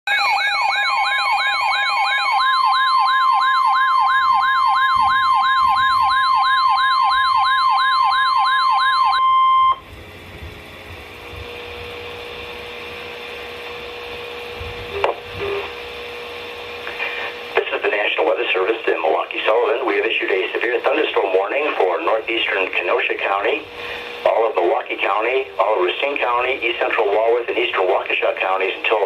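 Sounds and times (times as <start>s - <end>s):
siren sweeping up in pitch: 0.1s - 9.8s
steady alarm tone: 0.1s - 9.9s, 11.4s - 29.0s
faint hum: 3.6s - 29.0s
radio hiss: 13.0s - 15.9s, 16.7s - 29.0s.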